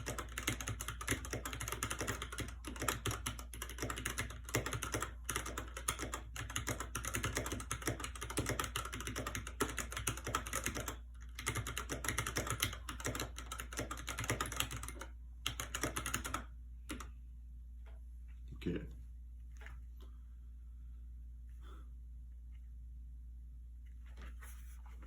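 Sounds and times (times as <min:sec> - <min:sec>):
mechanical keyboard typing: 0:00.0 - 0:17.1.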